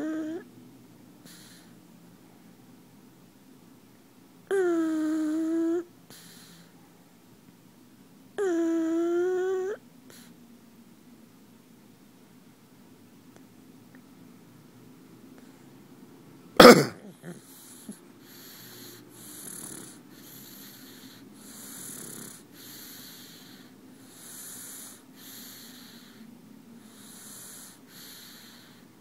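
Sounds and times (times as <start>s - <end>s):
dog snoring in wheezy breaths: 0.0s - 0.5s, 1.2s - 1.9s, 4.5s - 6.9s, 8.4s - 10.4s, 17.1s - 29.0s.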